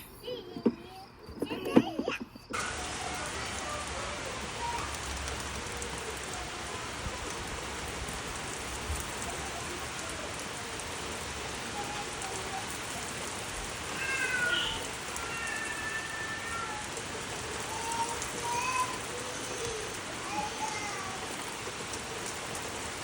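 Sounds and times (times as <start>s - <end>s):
steady rain-like hiss: 0.0s - 23.0s
high-pitched animal calls: 13.9s - 16.9s.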